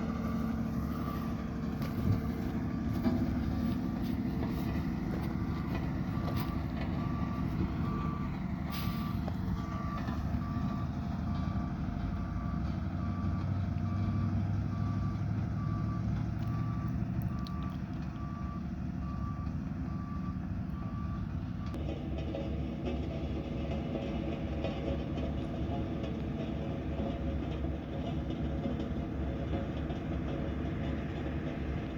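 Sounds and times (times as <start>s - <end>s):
reversing alarm beeping: 0.0s - 21.8s
diesel engine rumble: 0.0s - 31.9s.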